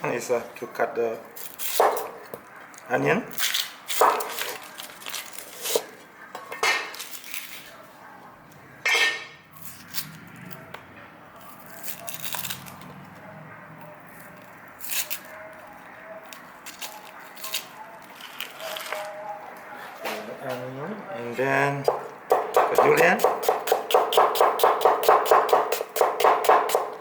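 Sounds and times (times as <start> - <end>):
knife chopping on cutting board: 21.9 - 27.0.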